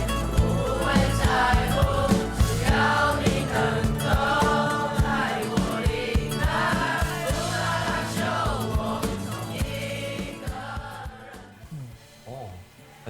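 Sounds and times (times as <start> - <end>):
band accompaniment with drum beat: 0.0 - 11.6
group of voices singing: 0.0 - 11.9.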